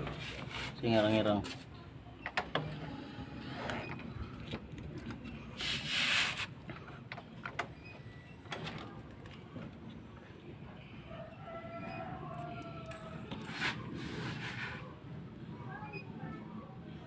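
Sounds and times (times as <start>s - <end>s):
scraping rub: 0.0s - 0.8s, 5.6s - 6.6s, 12.9s - 15.0s.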